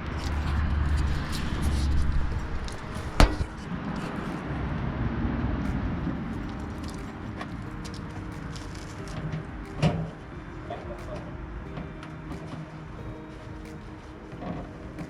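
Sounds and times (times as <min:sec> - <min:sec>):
sharp knock: 0:03.0 - 0:03.6.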